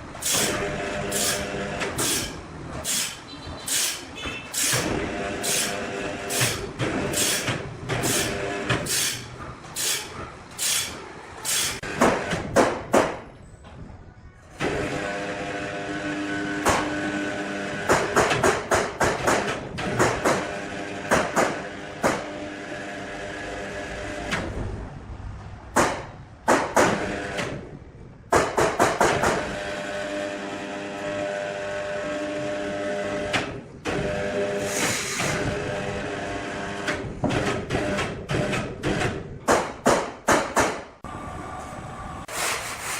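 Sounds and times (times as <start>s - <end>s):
sharp knocks and clanks: 0.2s - 13.8s, 17.8s - 22.3s, 25.7s - 27.6s, 28.3s - 29.5s, 36.8s - 41.0s
sawmill machine drone: 29.4s - 37.0s.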